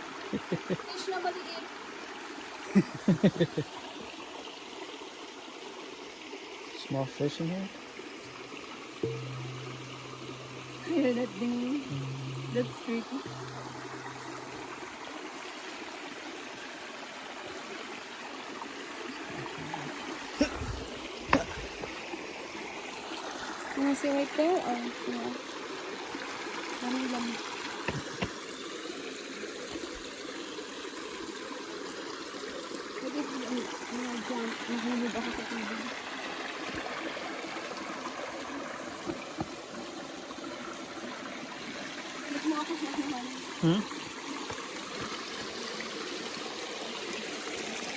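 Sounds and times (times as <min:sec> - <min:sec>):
mountain stream flowing: 0:00.0 - 0:47.9
sharp knocks: 0:09.0 - 0:15.0, 0:21.2 - 0:22.0, 0:27.9 - 0:28.4
faint knocks: 0:21.2 - 0:22.0.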